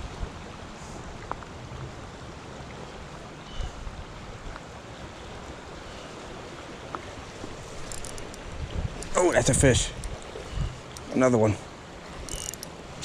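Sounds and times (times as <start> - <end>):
creek water flowing: 0.0 - 13.0
wind buffeting microphone: 7.4 - 11.2
faint ticks: 7.7 - 8.4, 9.9 - 11.1, 12.2 - 12.8.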